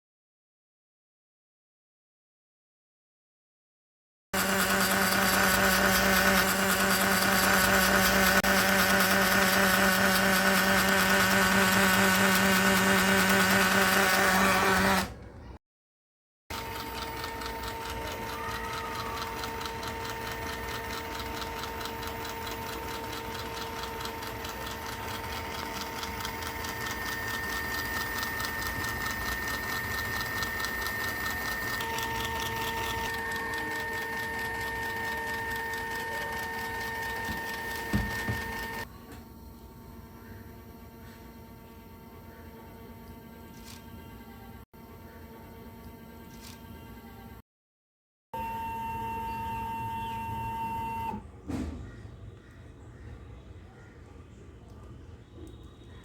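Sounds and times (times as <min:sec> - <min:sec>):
stepper motor whine: 0:04.4 - 0:15.2, 0:16.5 - 0:38.9, 0:48.4 - 0:51.2.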